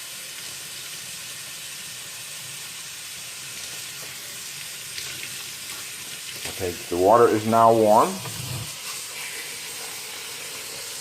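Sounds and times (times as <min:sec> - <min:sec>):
tap water running into container: 0:03.1 - 0:11.0.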